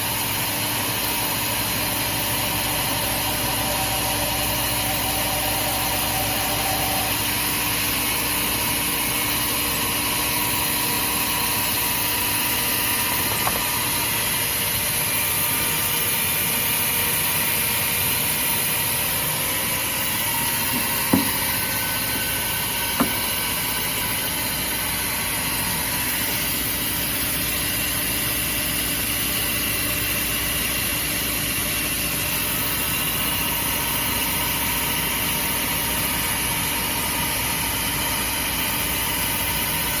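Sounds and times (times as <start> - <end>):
band saw drone with hiss: 0.0 - 14.8
sharp knocks: 20.7 - 21.5.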